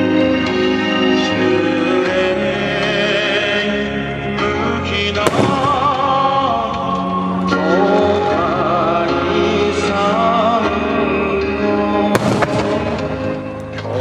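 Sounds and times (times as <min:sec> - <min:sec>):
song with singing voice: 0:00.0 - 0:14.0
fireworks bursting: 0:05.2 - 0:06.7, 0:12.2 - 0:13.5.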